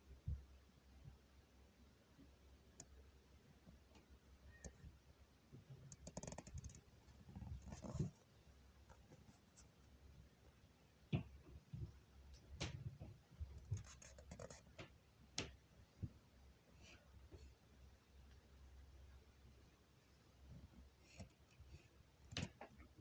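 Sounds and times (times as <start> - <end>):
faint knocks and clicks: 5.6 - 9.4, 11.1 - 16.2, 22.3 - 23.0.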